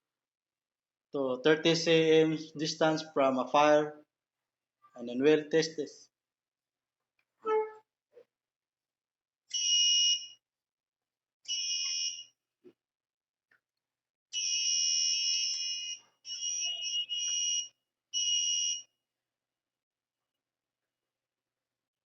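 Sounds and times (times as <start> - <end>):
shrill alarm buzzer: 9.6 - 10.4, 11.5 - 12.3, 14.4 - 18.9.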